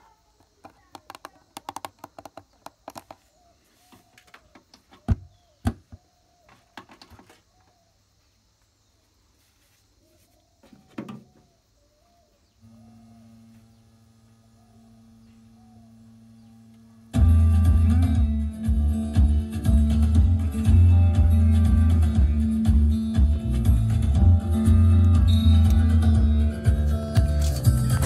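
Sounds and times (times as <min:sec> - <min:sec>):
faint bird chirps: 0:00.0 - 0:17.1
music through speakers: 0:17.1 - 0:28.0.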